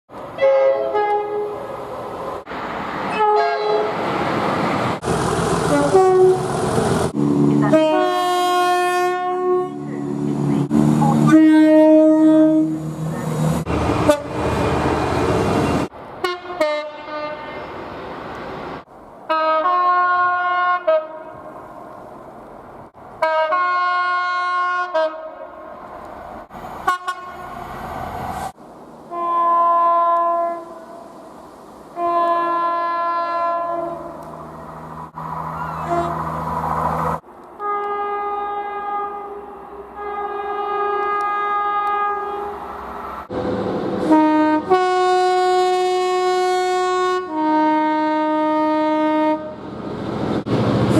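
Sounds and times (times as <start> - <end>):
passing train running noise: 0.1 - 50.9
train horn blasts: 0.4 - 1.6, 3.1 - 4.0, 5.7 - 6.5, 7.6 - 9.9, 10.8 - 12.9, 14.0 - 14.4, 16.2 - 17.6, 19.3 - 21.4, 23.2 - 25.6, 26.9 - 27.5, 29.1 - 30.8, 32.0 - 34.2, 35.8 - 36.2, 37.6 - 42.6, 44.0 - 49.6.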